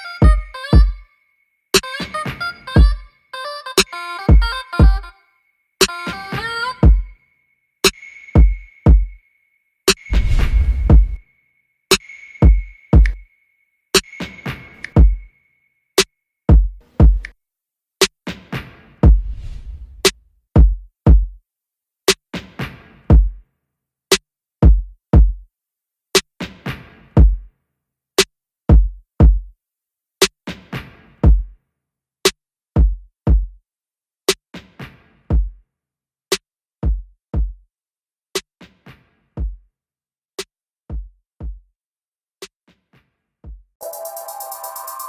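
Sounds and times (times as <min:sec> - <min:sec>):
electronic music with drum-machine beat: 0:03.8 - 0:05.1, 0:05.8 - 0:07.2, 0:07.8 - 0:09.2, 0:11.9 - 0:13.2, 0:14.0 - 0:15.3, 0:43.8 - 0:45.0.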